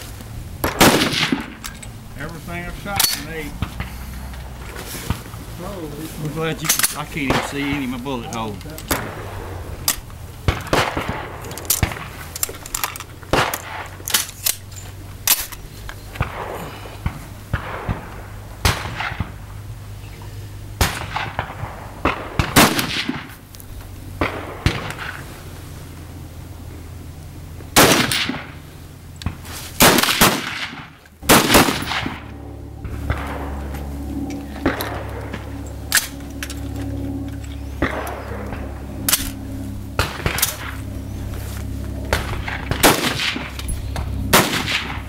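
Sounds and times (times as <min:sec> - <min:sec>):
rifle shots with echo: 0:00.6 - 0:01.7, 0:06.7 - 0:07.9, 0:08.9 - 0:12.2, 0:13.3 - 0:14.0, 0:16.2 - 0:19.4, 0:20.8 - 0:23.3, 0:24.2 - 0:25.2, 0:27.8 - 0:28.6, 0:29.8 - 0:33.9, 0:37.8 - 0:40.8, 0:42.0 - 0:43.6, 0:44.3 - 0:45.0.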